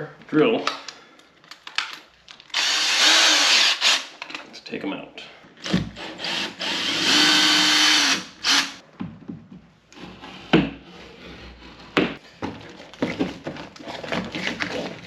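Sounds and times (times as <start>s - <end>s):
cordless drill motor: 2.5s - 4.0s, 6.2s - 8.8s.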